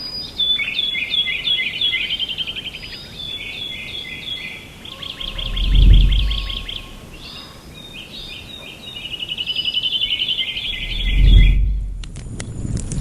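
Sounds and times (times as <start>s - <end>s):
songbirds chirping: 0.0s - 12.2s
low whoosh: 5.2s - 7.2s, 10.7s - 13.0s.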